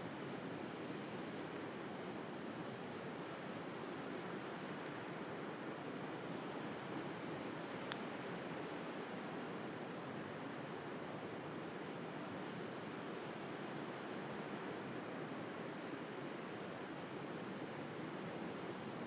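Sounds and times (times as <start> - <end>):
bonfire crackling and popping: 0.3 - 9.5.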